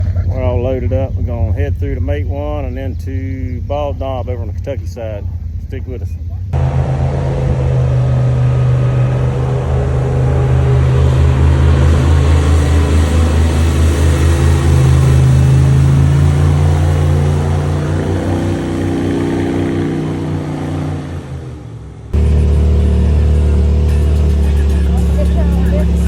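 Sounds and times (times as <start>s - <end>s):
utility vehicle engine running: 6.6s - 26.0s.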